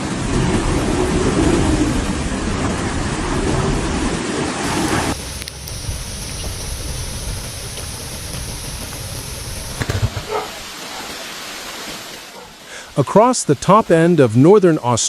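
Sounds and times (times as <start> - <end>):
storm wind: 0.2 - 11.0
heavy rain: 4.6 - 13.0.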